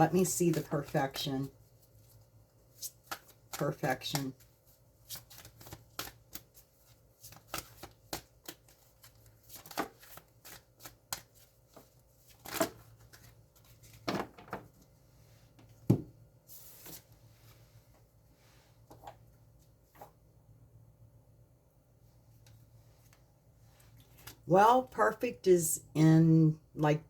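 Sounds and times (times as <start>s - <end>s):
cards being shuffled: 2.7s - 14.2s.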